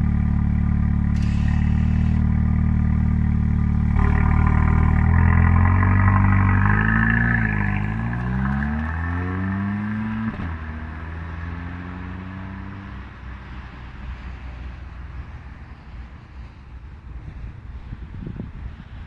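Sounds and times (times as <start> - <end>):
car engine accelerating hard: 0.0 - 15.5
wind noise: 16.8 - 19.0.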